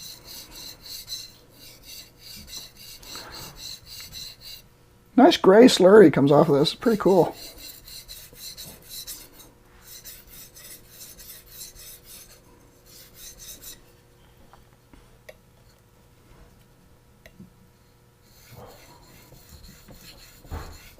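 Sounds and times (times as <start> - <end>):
knife scraping on whetstone: 0.0 - 4.7, 6.8 - 13.9, 18.2 - 20.9.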